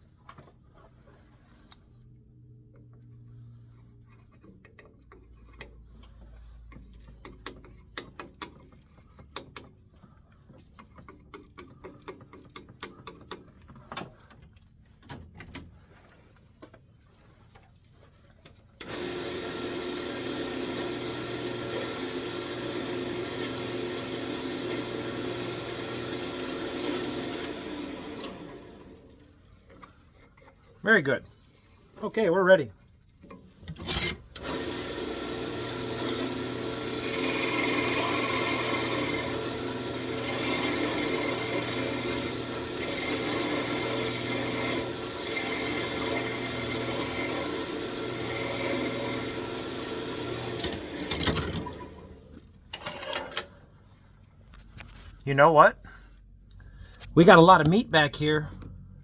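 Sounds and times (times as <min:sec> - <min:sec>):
tools clicking and knocking: 0:06.7 - 0:09.8, 0:10.5 - 0:15.7, 0:33.2 - 0:34.4, 0:50.5 - 0:51.9
lathe motor running: 0:18.9 - 0:29.0, 0:34.4 - 0:52.1.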